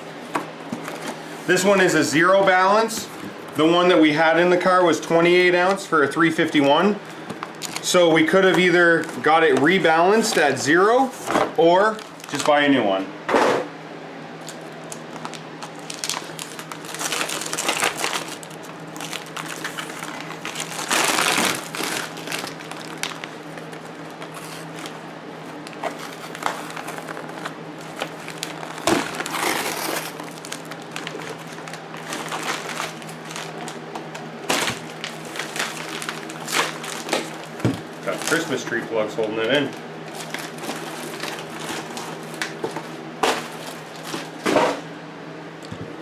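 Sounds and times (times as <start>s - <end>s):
steady low hum: 0.0s - 46.0s
packaging crinkling and rustling: 7.1s - 12.8s, 14.4s - 44.7s.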